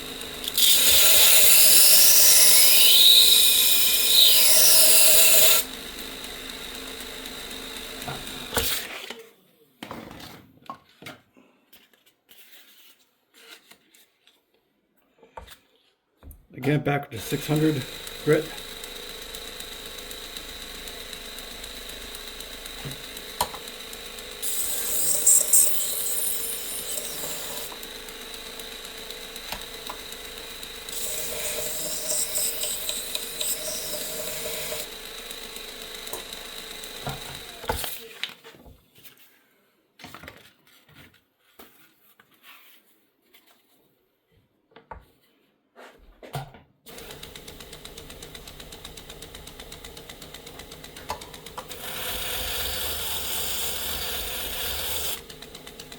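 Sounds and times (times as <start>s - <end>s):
belt sharpener humming and whining: 0.0s - 8.8s, 17.2s - 38.1s, 46.9s - 55.9s.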